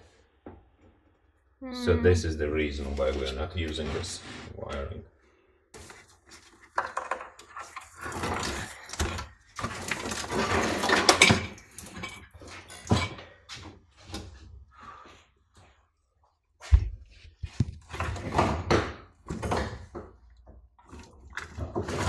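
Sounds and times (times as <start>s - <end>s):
wiring harness clattering and rustling: 5.8s - 13.2s.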